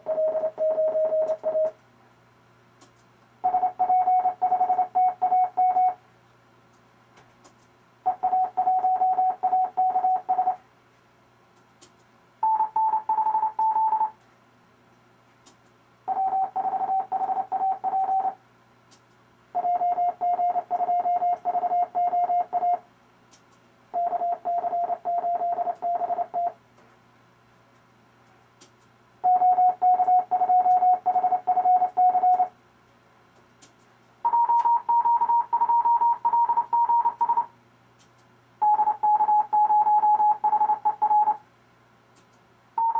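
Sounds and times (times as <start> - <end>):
morse code beeps: 0.0 - 1.8, 3.4 - 6.0, 8.1 - 10.6, 12.4 - 14.1, 16.1 - 18.4, 19.6 - 22.8, 24.0 - 26.6, 29.2 - 32.5, 34.2 - 37.5, 38.6 - 41.4.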